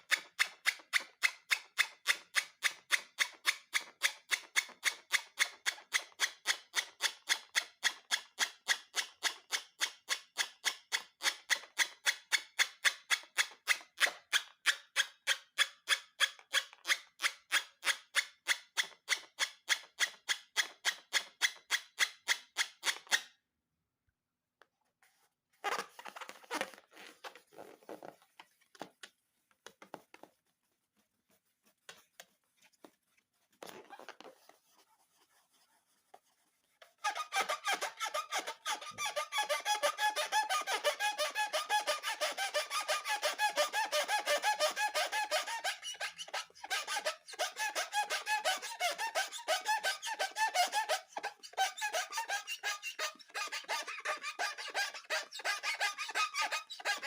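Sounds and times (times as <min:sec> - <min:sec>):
rubber balloon squeaking: 0:25.6 - 0:29.0, 0:33.6 - 0:34.6, 0:36.9 - 0:57.0.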